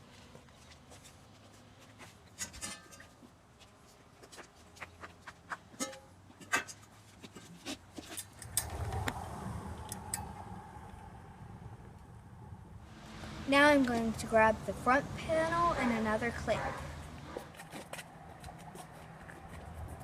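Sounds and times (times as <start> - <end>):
low rumble: 8.4 - 12.9.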